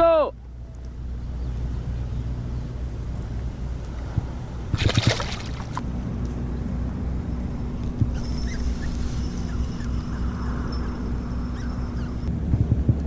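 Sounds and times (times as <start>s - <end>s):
steady low rumble: 0.3s - 13.0s
water sloshing and gurgling: 3.9s - 5.8s
water splash: 4.7s - 5.8s.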